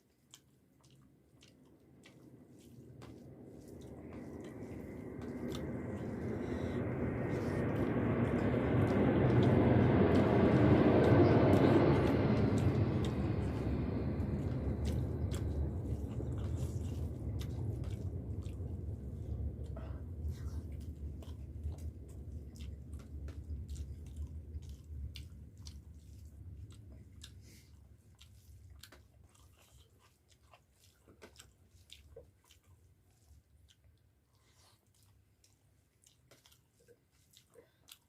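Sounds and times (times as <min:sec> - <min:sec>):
chewing and mouth sounds: 0:00.0 - 0:38.0
small wet mouth clicks: 0:00.1 - 0:27.5, 0:28.2 - 0:38.0
broad rushing noise: 0:03.5 - 0:20.2.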